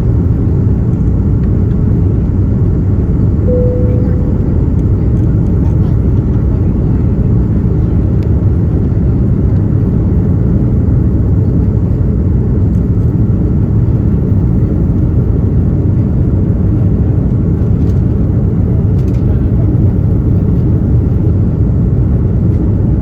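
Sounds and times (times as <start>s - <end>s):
airplane cabin engine rumble: 11.8s - 22.9s.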